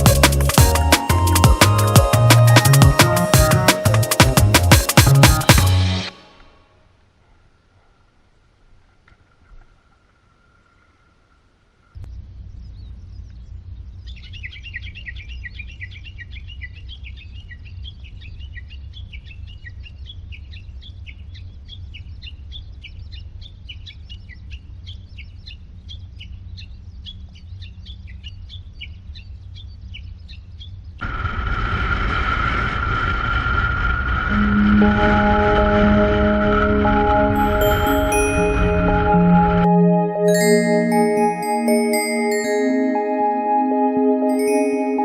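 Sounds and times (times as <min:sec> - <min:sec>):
music: 0:00.0 - 0:06.7, 0:34.3 - 0:45.0.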